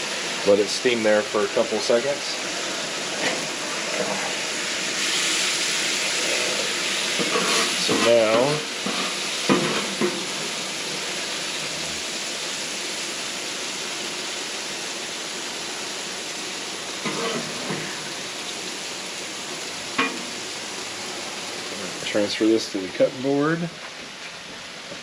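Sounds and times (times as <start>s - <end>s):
chicken sizzling in oil: 0.0s - 25.0s.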